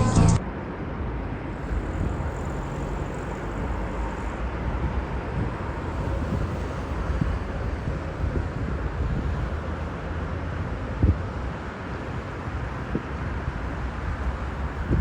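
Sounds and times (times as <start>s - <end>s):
faint high whine: 0.0s - 0.5s
jet engines low rumble: 0.0s - 15.0s.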